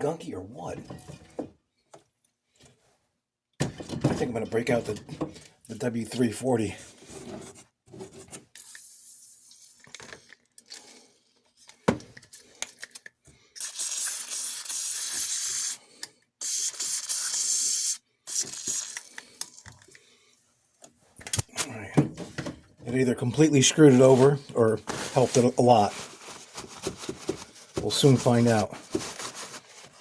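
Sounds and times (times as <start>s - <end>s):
aerosol can spraying: 13.6s - 15.8s, 16.4s - 19.1s.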